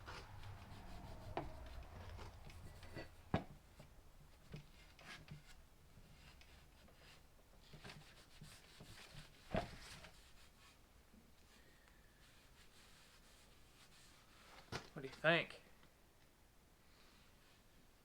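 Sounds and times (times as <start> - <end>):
rag rubbing wooden handle: 0.0 - 3.2.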